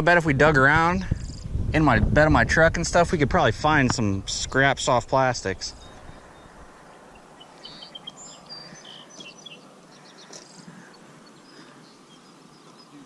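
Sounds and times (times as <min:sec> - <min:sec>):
outdoor background hiss: 0:00.0 - 0:13.0
small birds chirping: 0:04.0 - 0:13.0.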